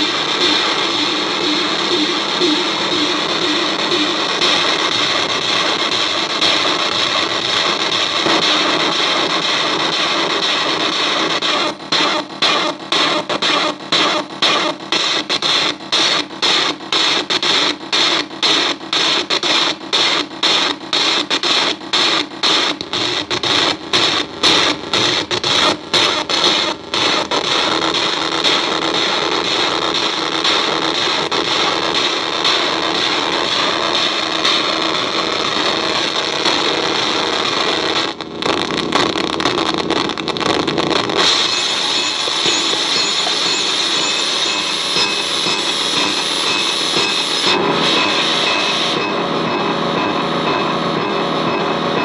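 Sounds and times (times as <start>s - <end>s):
harsh glitchy digital noise: 0.0s - 14.8s, 22.6s - 49.2s.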